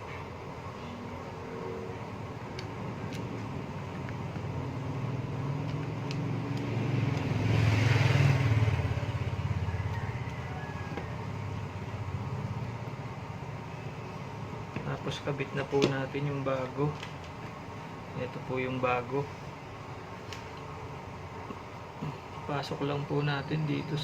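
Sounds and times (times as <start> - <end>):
vehicle engine passing by: 6.2 - 12.7.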